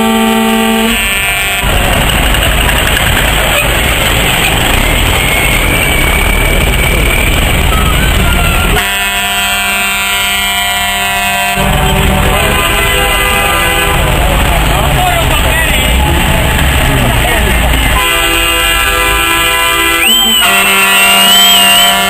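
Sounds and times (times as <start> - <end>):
truck air horn: 0.0 - 1.9, 7.6 - 14.7, 17.8 - 22.0
truck engines running rough: 0.0 - 22.0.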